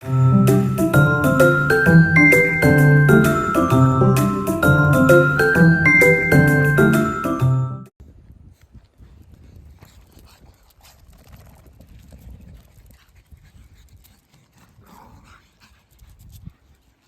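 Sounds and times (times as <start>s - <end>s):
dog panting: 12.6s - 17.0s.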